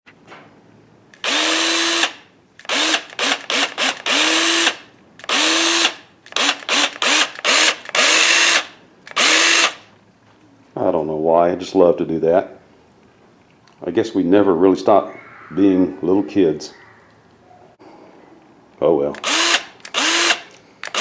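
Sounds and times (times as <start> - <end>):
electric drill motor whining: 1.2 - 9.8, 19.2 - 21.0.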